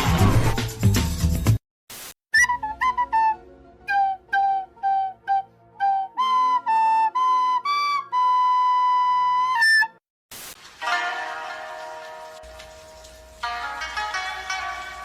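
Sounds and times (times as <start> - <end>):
flute-like woodwind melody: 2.3 - 10.0.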